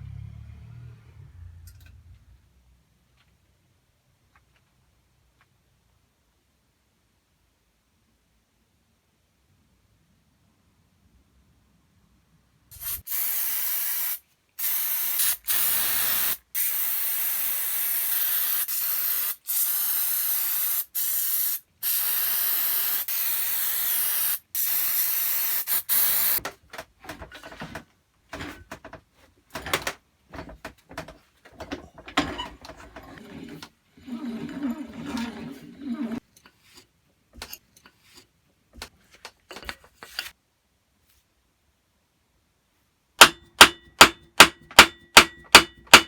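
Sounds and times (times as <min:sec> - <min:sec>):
pressurized spray hissing: 0:12.7 - 0:26.4.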